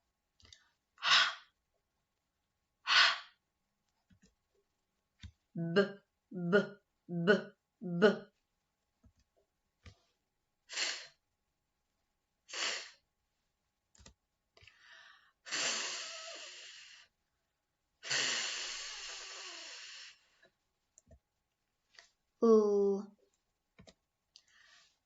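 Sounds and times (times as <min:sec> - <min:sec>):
woman making f hisses: 0:01.0 - 0:01.5, 0:02.9 - 0:03.4, 0:10.7 - 0:11.2, 0:12.5 - 0:13.0, 0:15.5 - 0:17.1, 0:18.0 - 0:20.3.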